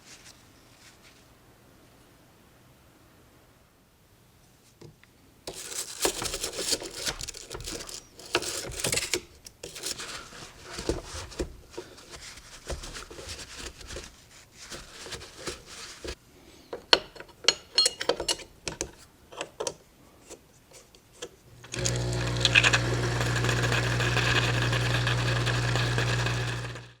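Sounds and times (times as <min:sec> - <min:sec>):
metal parts clicking and scraping: 0:05.5 - 0:10.9, 0:17.1 - 0:19.8
espresso machine pump humming: 0:21.6 - 0:27.0.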